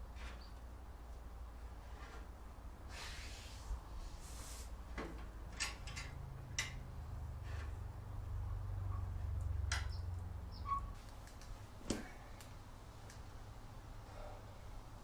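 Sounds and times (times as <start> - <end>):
soft scrapes: 2.9 - 4.8.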